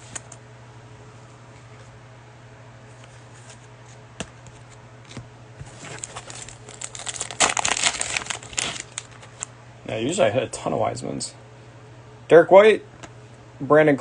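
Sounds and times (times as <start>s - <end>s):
low steady hum: 0.0s - 14.0s
cellophane pack crinkling and tearing: 5.7s - 9.5s.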